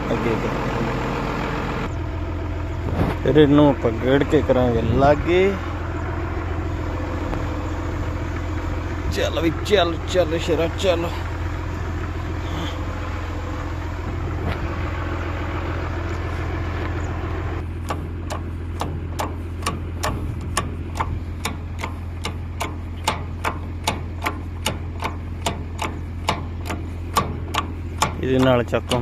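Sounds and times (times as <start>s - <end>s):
tractor engine running: 0.0s - 29.0s
regular clicking: 17.8s - 29.0s.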